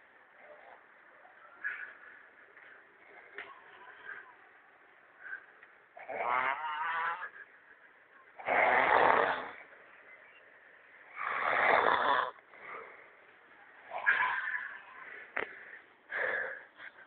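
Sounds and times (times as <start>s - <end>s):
person snoring loudly: 8.4s - 9.6s, 11.2s - 12.4s.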